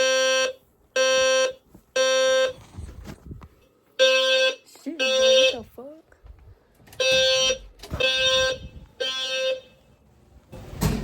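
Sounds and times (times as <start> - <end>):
fire alarm beeps: 0.0 - 2.6, 7.0 - 9.7.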